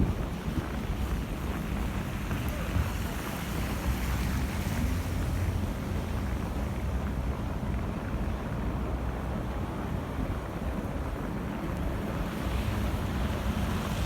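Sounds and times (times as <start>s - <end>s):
wind blowing against microphone: 0.0s - 3.1s.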